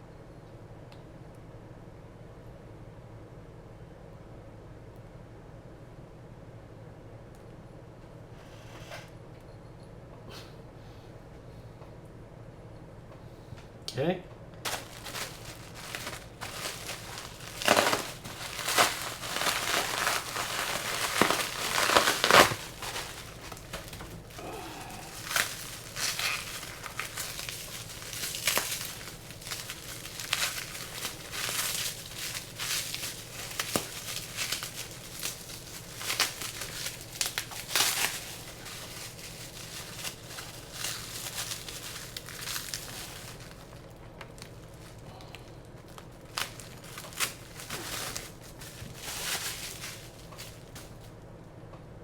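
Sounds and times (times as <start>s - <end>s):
packing material crinkling: 14.6s - 51.2s.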